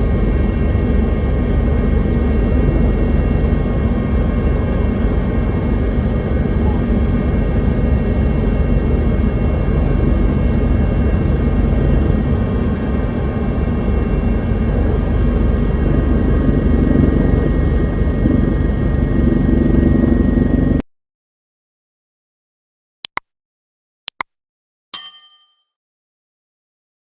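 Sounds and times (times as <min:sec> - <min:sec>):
helicopter rumble: 0:00.0 - 0:20.8.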